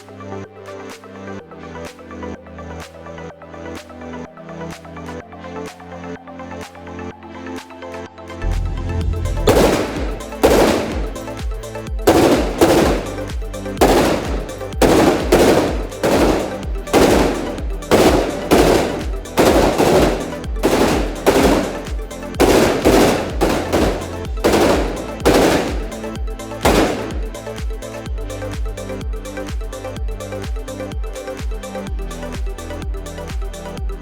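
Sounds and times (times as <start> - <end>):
electronic music with bass: 8.4 - 9.5
suppressed rifle rapid fire: 9.4 - 27.7.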